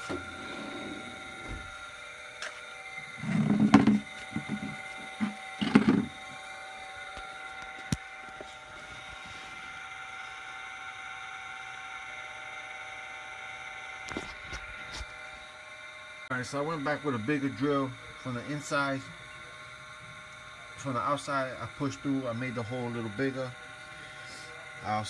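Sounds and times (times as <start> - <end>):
power drill boring through wall: 0.0 - 12.2
steady hum: 0.0 - 25.0.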